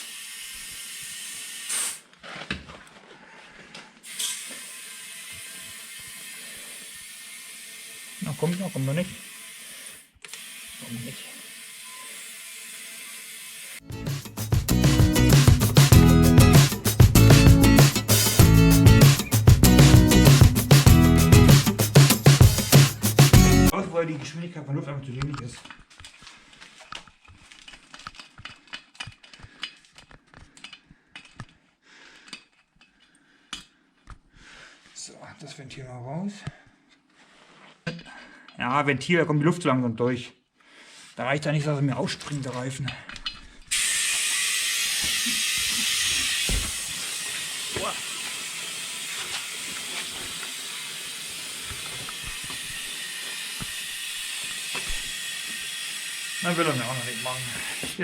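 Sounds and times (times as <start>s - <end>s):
compressed air hissing: 0.0s - 2.0s, 4.1s - 7.0s, 43.7s - 58.0s
tools clicking and knocking: 26.9s - 31.6s, 32.2s - 34.2s.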